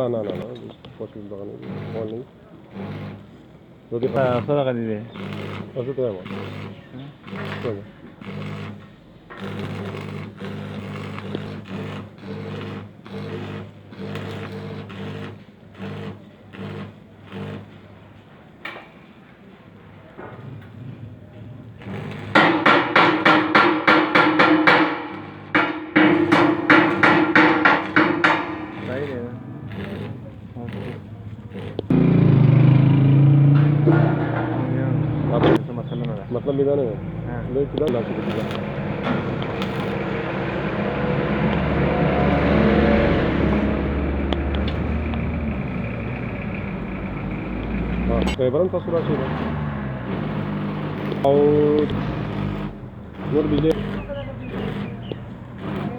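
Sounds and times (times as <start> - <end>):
hammer striking metal on anvil: 22.4 - 29.2, 33.3 - 35.2
vehicle engine passing by: 28.4 - 55.9.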